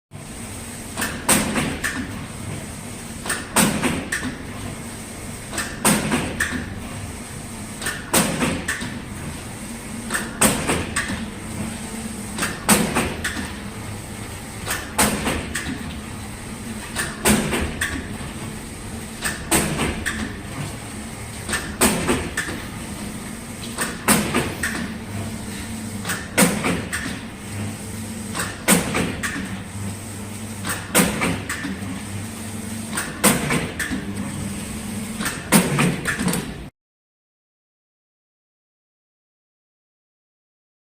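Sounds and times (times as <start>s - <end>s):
steady motor hum: 0.2s - 36.1s
paper cutting machine clacks: 0.9s - 2.2s, 3.2s - 4.7s, 5.5s - 6.8s, 7.7s - 13.7s, 14.5s - 29.8s, 30.5s - 32.1s, 32.8s - 36.7s.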